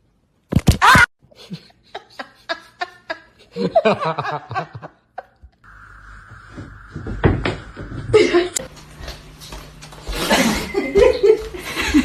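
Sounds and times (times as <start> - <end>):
steady hiss: 5.7 - 9.4
person laughing: 7.9 - 8.7.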